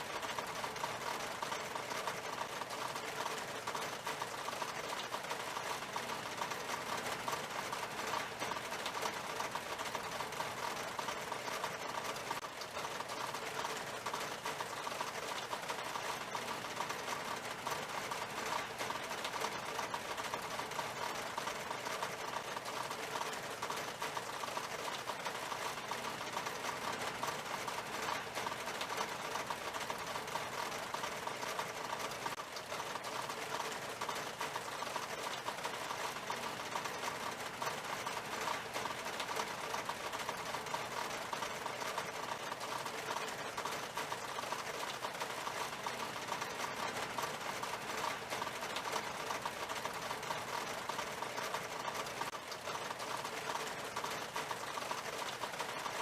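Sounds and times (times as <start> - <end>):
rain on a glass window: 0.0 - 56.0.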